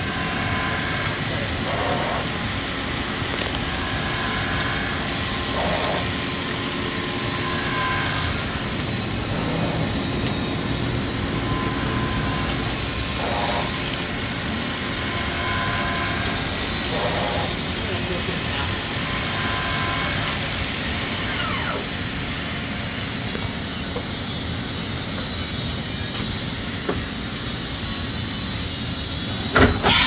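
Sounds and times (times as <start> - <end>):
machine hum with high tones: 0.0 - 30.0
short machine noise burst: 29.7 - 30.0.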